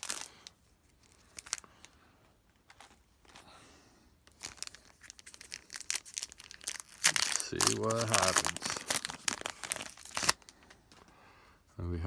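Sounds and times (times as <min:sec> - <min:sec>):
foil wrapper crinkling: 0:00.0 - 0:02.0, 0:04.3 - 0:11.0.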